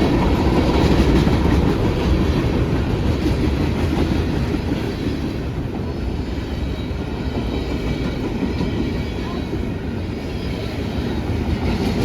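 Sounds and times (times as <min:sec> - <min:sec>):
freight train wheels rumbling: 0:00.0 - 0:12.0.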